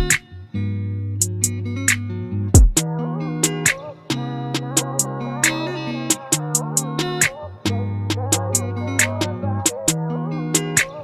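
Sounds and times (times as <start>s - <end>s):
steady beat with percussive hits: 0.0s - 0.2s, 2.6s - 3.8s, 6.1s - 7.4s
plucked guitar: 0.0s - 11.0s.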